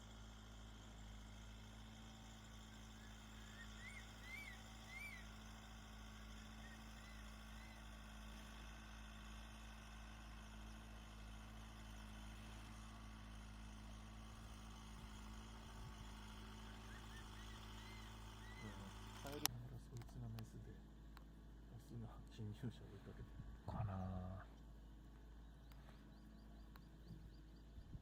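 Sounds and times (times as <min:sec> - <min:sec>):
steady low hum: 0:00.0 - 0:28.0
eagle whistled calls: 0:02.7 - 0:05.5, 0:06.4 - 0:07.9, 0:16.6 - 0:19.2.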